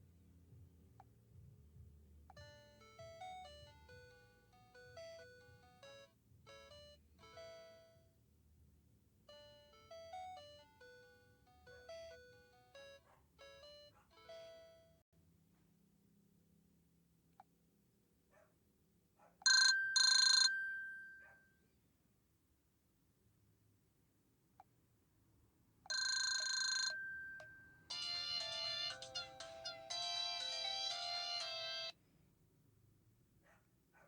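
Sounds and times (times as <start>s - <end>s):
polyphonic phone ringtone: 2.4s - 8.1s, 9.3s - 15.0s, 19.5s - 21.3s, 25.9s - 32.0s.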